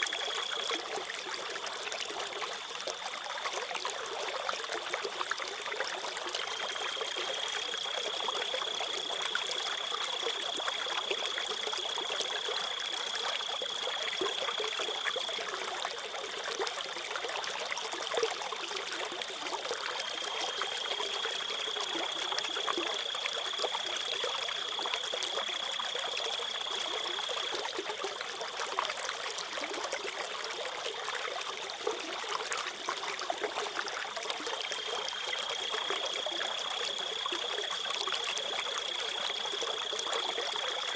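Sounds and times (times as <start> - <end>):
stream trickling and babbling: 0.0 - 40.9
crickets trilling: 20.1 - 27.6, 34.6 - 40.9.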